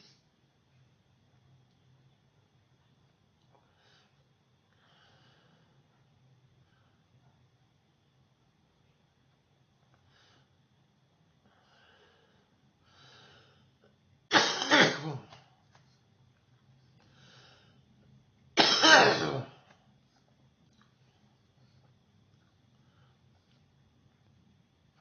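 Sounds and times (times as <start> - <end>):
faint breaths: 3.5 - 7.5, 9.8 - 14.1, 15.4 - 18.4, 19.6 - 24.4
person coughing: 14.3 - 15.4, 18.6 - 19.6.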